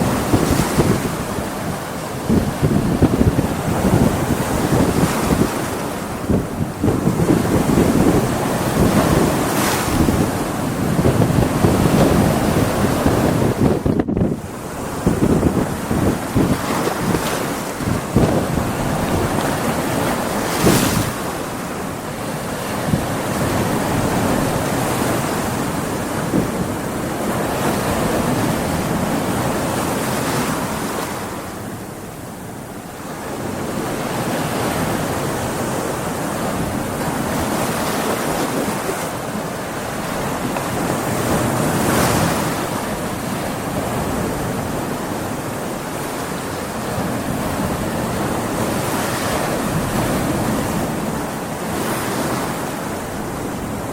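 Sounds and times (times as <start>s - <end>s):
wind buffeting microphone: 0.0s - 32.2s
ocean waves breaking on beach: 0.0s - 53.9s.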